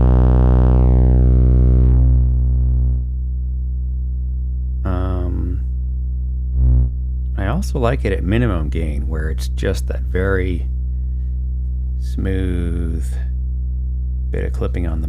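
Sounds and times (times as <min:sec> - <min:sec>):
distorted buzzy test tone: 0:00.0 - 0:05.6, 0:06.4 - 0:10.8.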